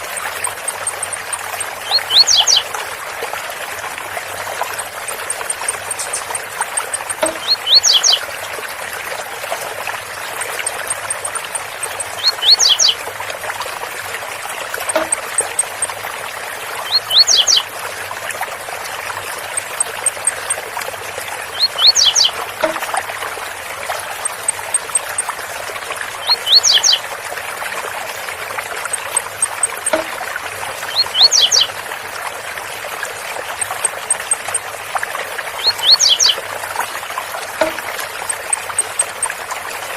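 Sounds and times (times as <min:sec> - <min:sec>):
bird singing high notes: 0:04.8 - 0:08.2, 0:10.6 - 0:13.0.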